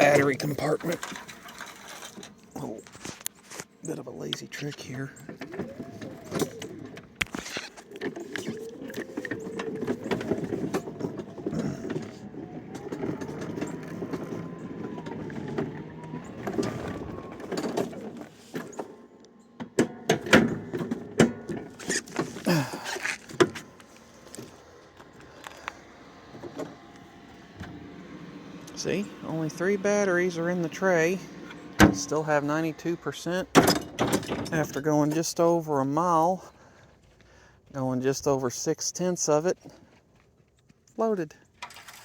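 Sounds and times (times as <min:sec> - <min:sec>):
electric mower motor whine: 0:04.4 - 0:34.9.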